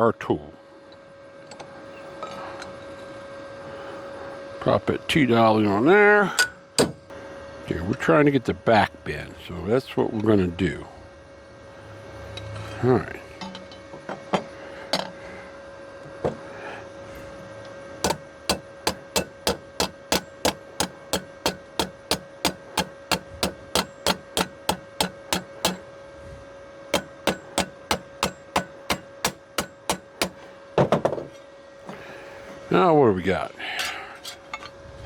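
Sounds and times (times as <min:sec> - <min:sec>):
steady hum: 0:00.1 - 0:35.0
hammer striking sheet metal: 0:18.0 - 0:25.8, 0:27.0 - 0:30.4.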